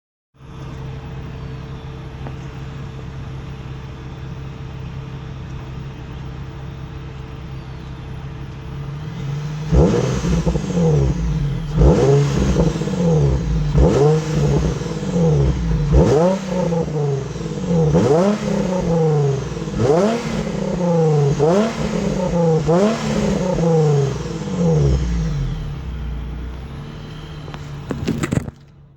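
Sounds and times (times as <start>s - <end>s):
car engine idling and revving: 0.4s - 28.9s.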